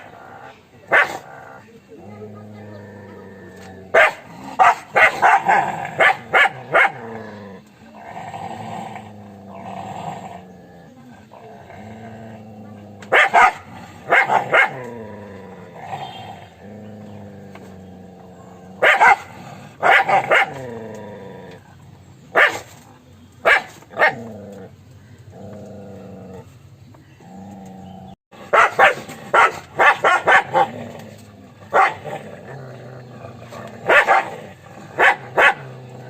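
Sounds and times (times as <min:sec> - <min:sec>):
dog barking: 0:00.9 - 0:01.3, 0:03.9 - 0:07.0, 0:13.1 - 0:14.9, 0:18.8 - 0:20.6, 0:22.4 - 0:22.7, 0:23.4 - 0:24.2, 0:28.5 - 0:30.8, 0:31.7 - 0:32.0, 0:33.9 - 0:34.4, 0:35.0 - 0:35.7.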